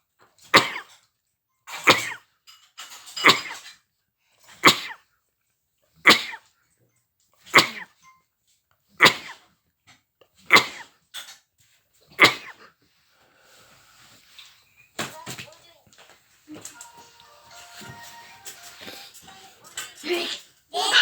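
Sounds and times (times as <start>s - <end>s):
person sneezing: 0.5s - 0.9s, 1.8s - 2.2s, 3.2s - 3.6s, 4.6s - 5.0s, 6.1s - 6.4s, 7.5s - 7.9s, 9.0s - 9.4s, 10.5s - 10.9s, 12.2s - 12.7s.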